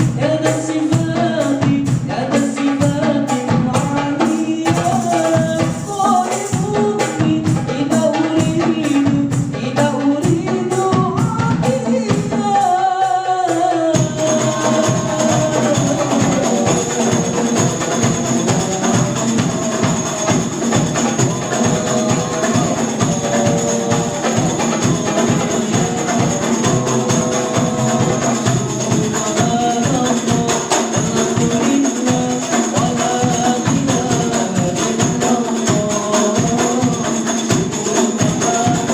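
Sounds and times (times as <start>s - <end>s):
hand drums beating: 0.0s - 38.9s
person singing: 0.0s - 38.9s
jingling tambourine: 13.5s - 38.9s.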